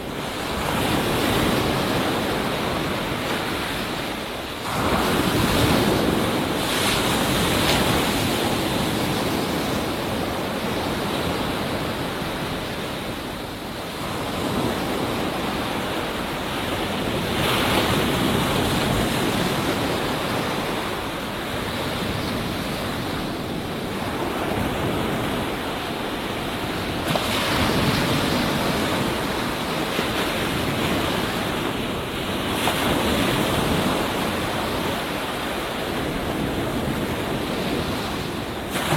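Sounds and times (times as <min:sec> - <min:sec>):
waves breaking on a beach: 0:00.0 - 0:38.9.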